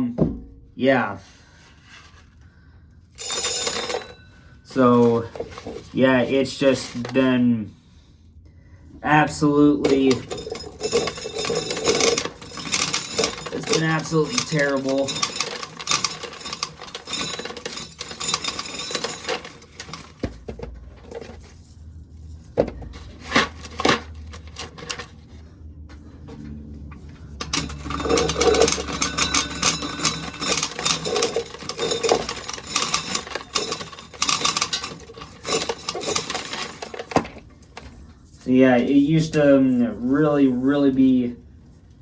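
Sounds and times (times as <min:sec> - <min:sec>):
metal objects clattering and scraping: 0:03.2 - 0:07.3, 0:09.2 - 0:21.7, 0:22.4 - 0:25.4, 0:26.3 - 0:38.4.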